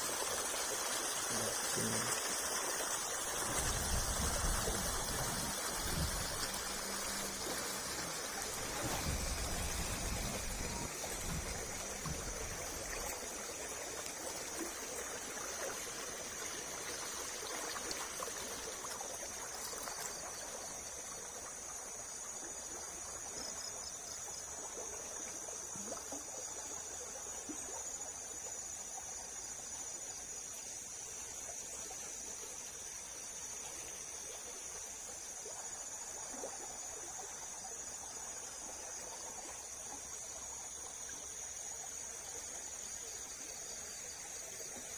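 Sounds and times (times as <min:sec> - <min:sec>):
water rushing over weir: 0:00.0 - 0:21.6
crickets trilling: 0:00.0 - 0:44.9.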